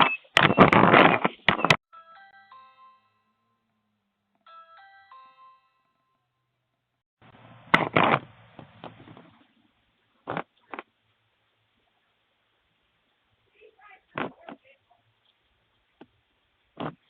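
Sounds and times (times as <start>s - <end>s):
doorbell chime tune: 1.9s - 3.7s, 4.4s - 6.5s
rustling: 7.7s - 17.0s.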